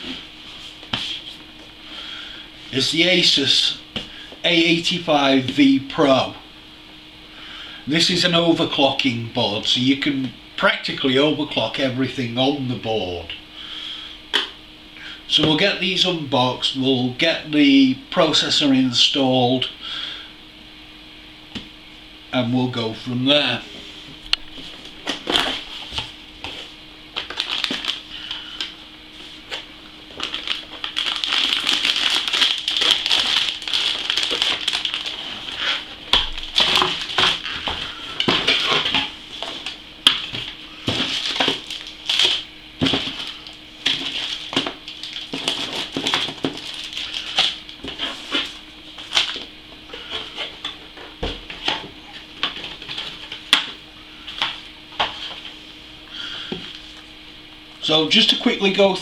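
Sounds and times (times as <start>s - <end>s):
faint steady hum: 0.0s - 59.0s
packaging crinkling: 27.1s - 28.8s, 29.4s - 50.6s.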